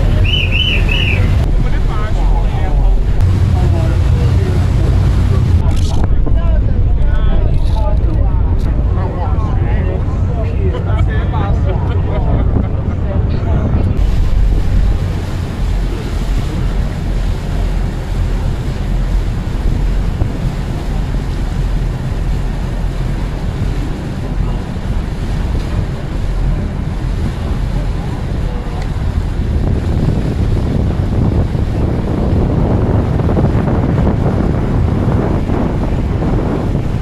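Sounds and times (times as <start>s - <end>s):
rushing water: 0.0s - 37.0s
wind buffeting microphone: 0.0s - 37.0s.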